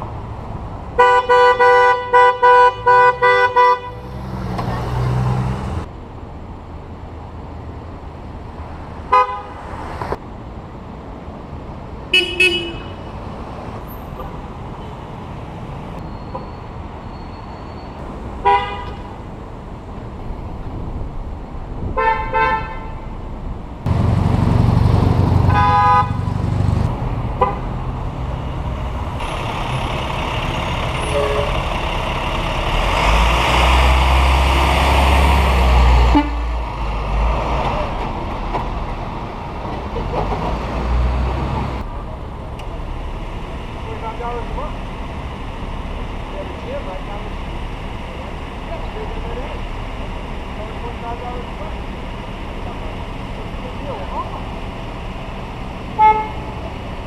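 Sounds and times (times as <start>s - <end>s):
road traffic noise: 0.0s - 57.0s
vehicle engine rumble: 0.0s - 57.0s
car horns honking: 1.0s - 4.2s, 9.1s - 9.6s, 12.1s - 13.1s, 18.4s - 19.2s, 22.0s - 23.2s, 25.4s - 26.3s, 27.4s - 27.8s, 31.0s - 31.7s, 36.0s - 36.5s, 56.0s - 56.6s.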